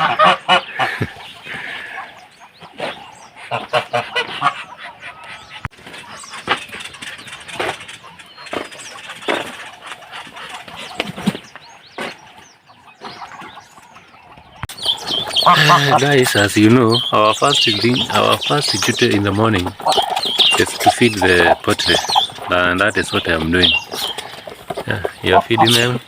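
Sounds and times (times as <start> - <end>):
poultry calling: 0.0 - 26.0.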